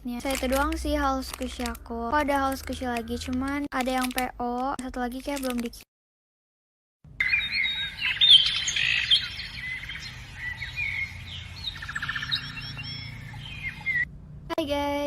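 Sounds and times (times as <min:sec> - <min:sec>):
birds chirping and twittering: 0:07.1 - 0:14.1.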